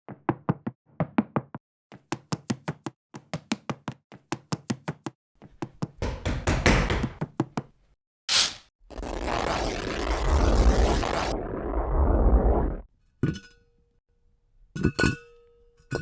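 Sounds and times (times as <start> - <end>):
brief high hiss: 8.3 - 8.7.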